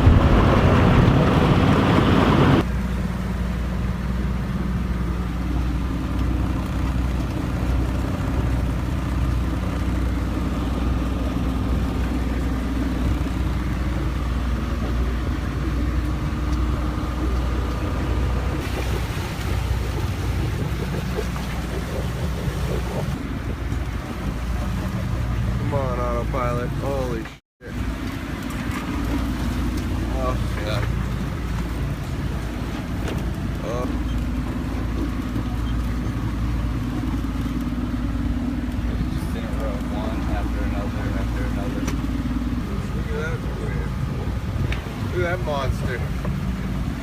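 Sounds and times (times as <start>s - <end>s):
boat engine droning: 0.0s - 2.6s, 4.0s - 47.0s
wind and water wash: 0.0s - 47.0s.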